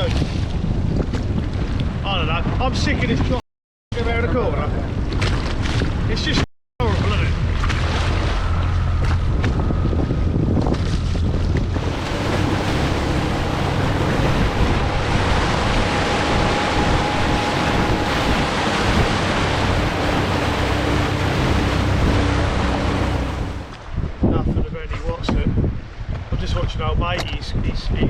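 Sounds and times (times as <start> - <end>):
wind buffeting microphone: 0.0 - 3.4, 4.0 - 28.0
water washing around boat: 4.0 - 24.2.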